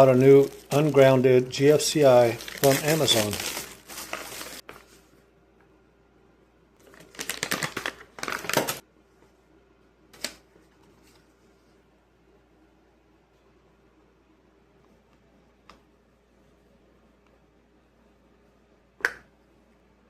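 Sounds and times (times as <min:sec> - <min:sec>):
small hard objects clattering: 0:01.9 - 0:04.6.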